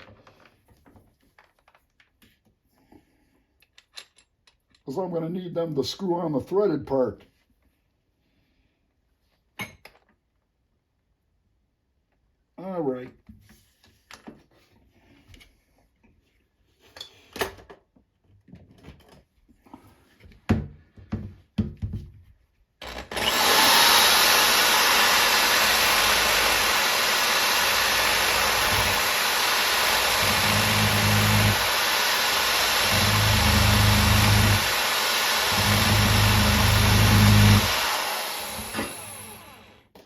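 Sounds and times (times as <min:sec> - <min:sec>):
electric drill grinding plastic: 0:22.8 - 0:39.9.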